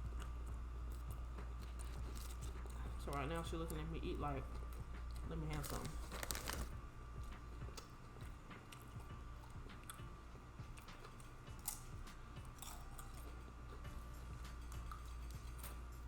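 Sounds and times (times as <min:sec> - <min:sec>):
faint steady hum: 0:00.0 - 0:16.0
chewing: 0:00.1 - 0:02.9, 0:07.2 - 0:14.1, 0:14.7 - 0:15.8.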